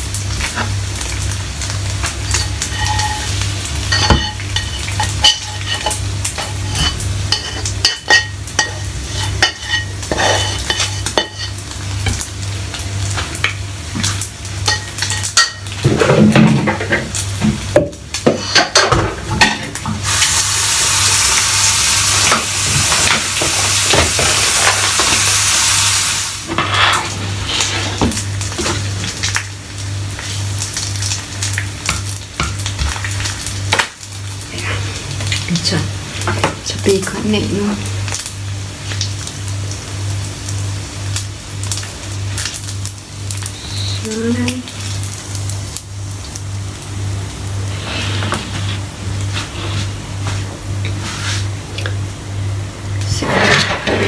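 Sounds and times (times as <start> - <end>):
bacon sizzling in a pan: 0.0 - 53.3
spatula scraping a pan: 2.3 - 11.6, 26.5 - 28.1, 47.7 - 50.0, 53.2 - 54.0.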